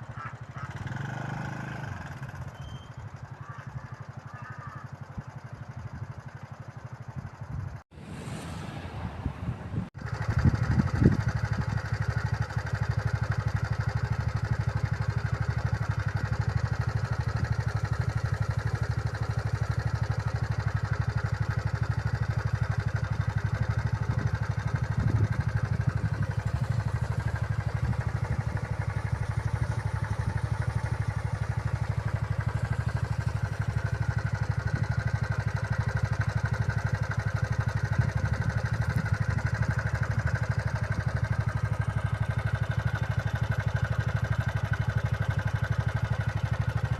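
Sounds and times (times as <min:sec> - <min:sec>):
vehicle engine running: 0:00.0 - 0:46.9.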